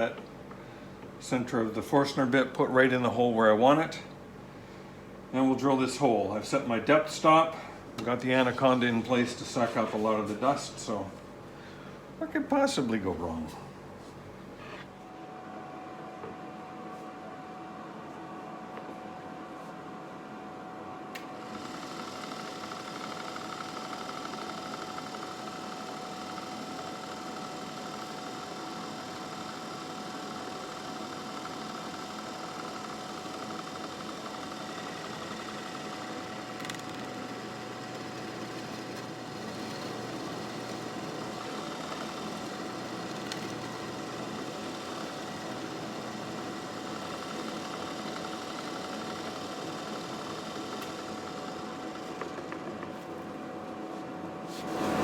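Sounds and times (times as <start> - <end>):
dust extractor hum: 0.0 - 55.0
drill press boring wood: 21.4 - 52.9, 54.6 - 55.0.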